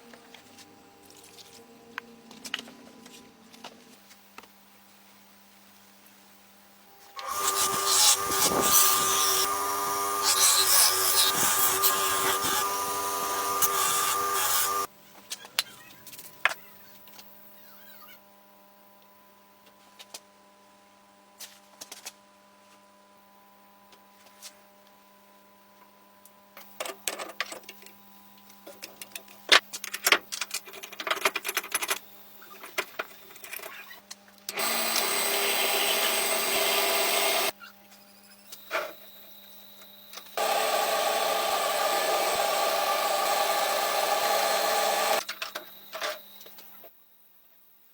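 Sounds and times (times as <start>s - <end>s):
small power tool running: 7.2s - 14.9s, 34.5s - 37.6s, 40.3s - 45.3s.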